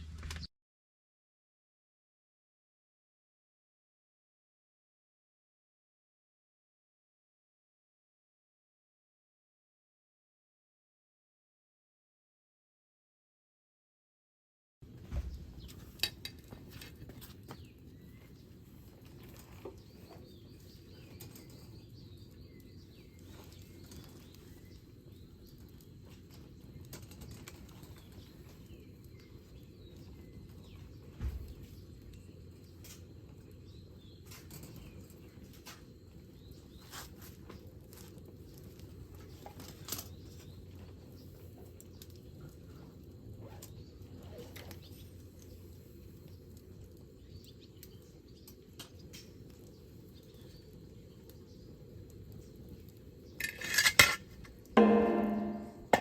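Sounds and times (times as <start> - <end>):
wood fire crackling and popping: 14.9 - 56.0.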